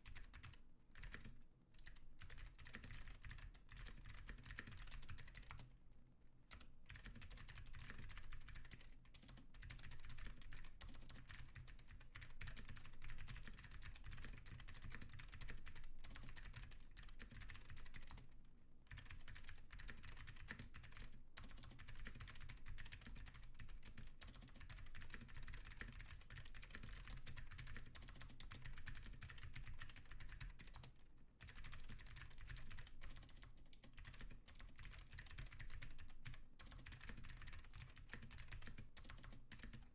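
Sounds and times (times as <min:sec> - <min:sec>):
fast typing on clicky mechanical keyboard: 0:00.1 - 0:05.7, 0:06.5 - 0:18.3, 0:18.9 - 0:39.9.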